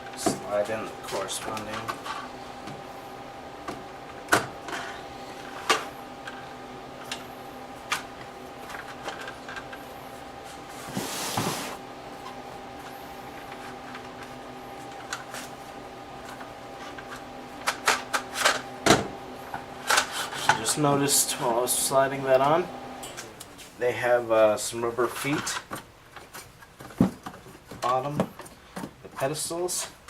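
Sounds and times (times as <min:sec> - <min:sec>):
steady background hum: 0:00.0 - 0:30.0
short scraping rub: 0:10.5 - 0:11.8.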